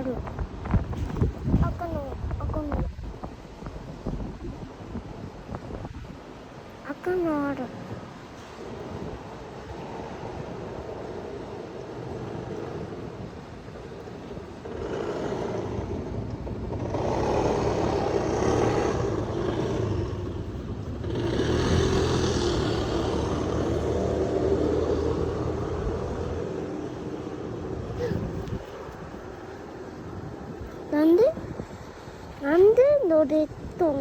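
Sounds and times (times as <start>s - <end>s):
train rumbling past on rails: 8.1s - 30.6s.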